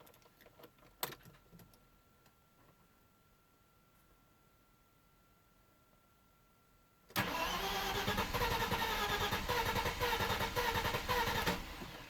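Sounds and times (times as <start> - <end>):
car engine cranking on starter: 7.2 - 12.0.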